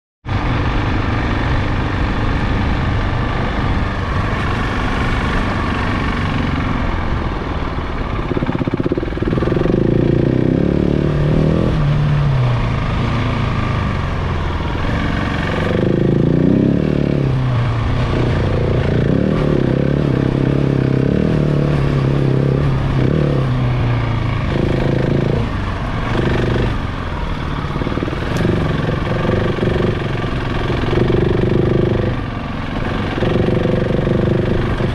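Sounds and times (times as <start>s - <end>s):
motorcycle engine revving: 0.3s - 34.9s.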